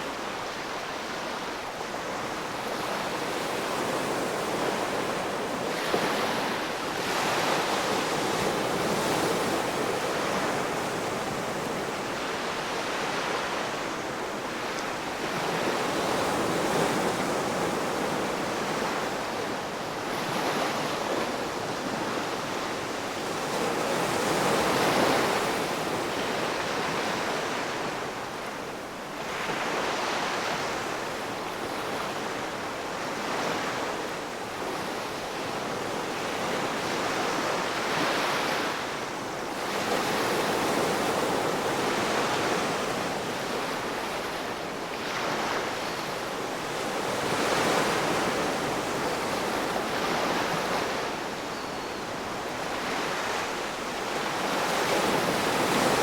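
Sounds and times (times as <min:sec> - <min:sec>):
wind: 0:00.0 - 0:56.0.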